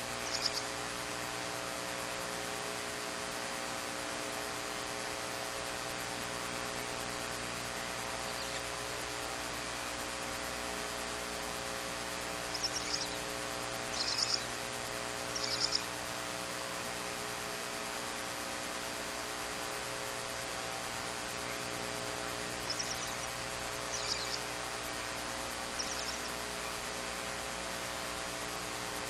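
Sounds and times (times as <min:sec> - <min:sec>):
owl chick raspy calls: 0:00.0 - 0:00.7, 0:12.4 - 0:14.6, 0:15.3 - 0:15.9, 0:22.4 - 0:26.8
electrical hum and hiss: 0:00.0 - 0:29.0.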